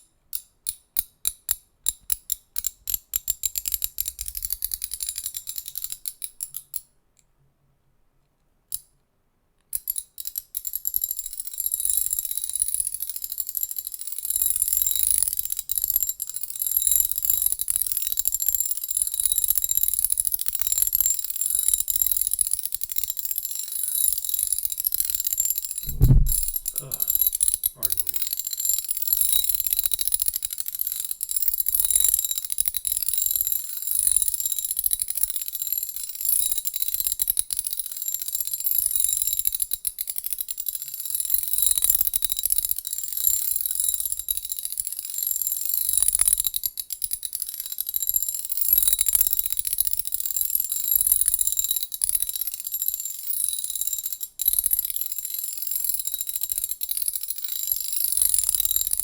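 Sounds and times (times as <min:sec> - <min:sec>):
low thump: 0:25.9 - 0:27.2.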